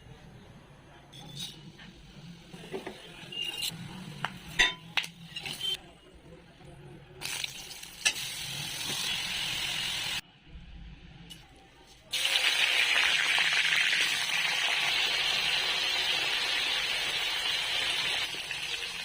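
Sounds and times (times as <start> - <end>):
frying sizzle: 7.2 - 10.2, 12.1 - 19.0.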